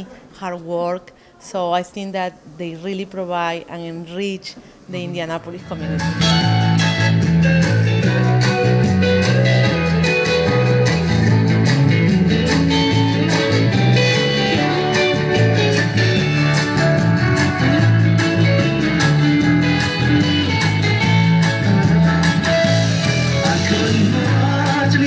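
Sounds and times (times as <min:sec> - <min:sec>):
guitar-led background music: 0:05.5 - 0:25.0
steady bass line: 0:05.5 - 0:25.0.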